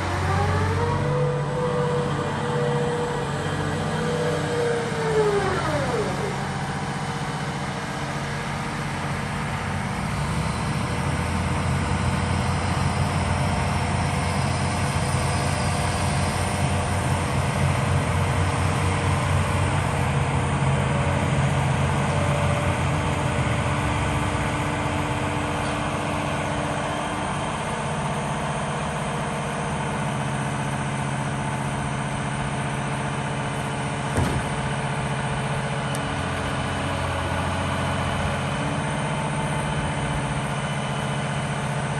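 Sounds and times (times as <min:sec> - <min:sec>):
excavator diesel engine running: 0:00.0 - 0:41.9
short knock: 0:34.1 - 0:34.8.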